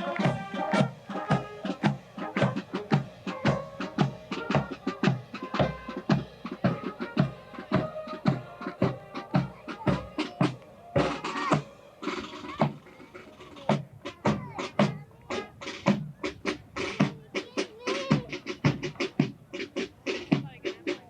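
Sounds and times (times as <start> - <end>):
pitched instrument notes: 0.0 - 13.7.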